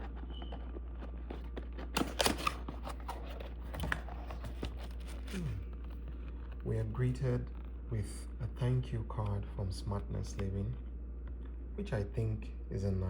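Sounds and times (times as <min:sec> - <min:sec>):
packaging clicks and rustles: 0:00.0 - 0:06.7
steady low hum: 0:00.0 - 0:13.0.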